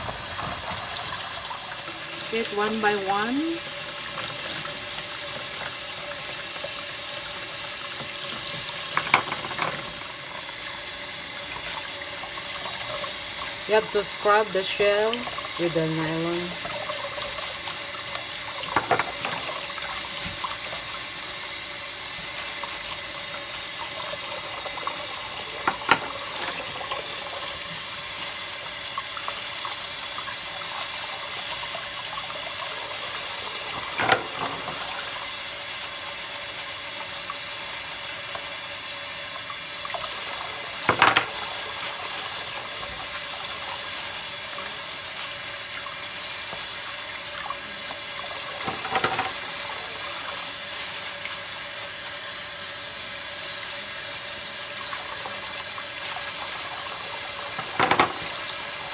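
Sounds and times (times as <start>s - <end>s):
tap water running into sink: 0.0s - 58.9s
oyster shells knocking: 25.7s - 26.7s, 40.9s - 41.4s.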